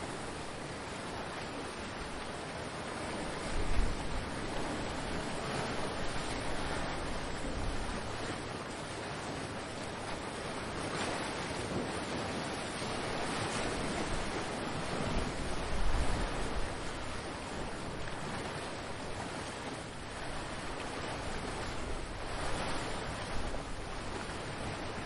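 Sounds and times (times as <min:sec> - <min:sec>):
ocean waves surf: 0:00.0 - 0:25.0
wind buffeting microphone: 0:03.0 - 0:08.4, 0:10.8 - 0:25.0.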